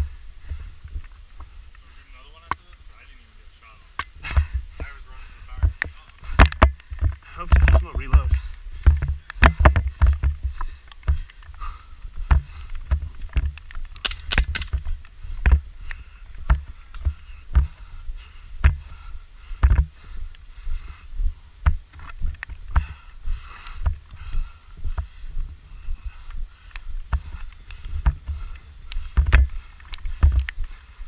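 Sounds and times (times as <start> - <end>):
sharp cracks: 13.9 - 14.8.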